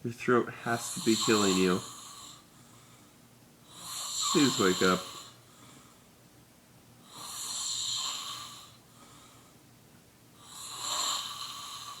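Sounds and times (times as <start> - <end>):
man snoring: 0.7 - 2.4, 3.7 - 5.4, 7.1 - 8.8, 10.4 - 12.0.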